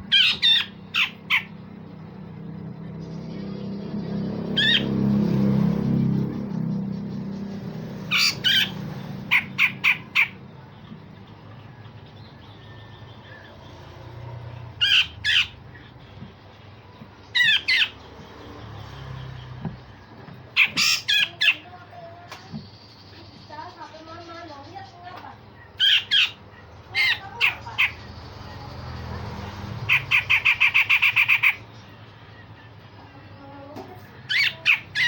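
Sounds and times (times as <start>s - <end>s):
bulbul calling: 6.3s - 13.7s, 19.2s - 21.8s, 29.8s - 32.8s.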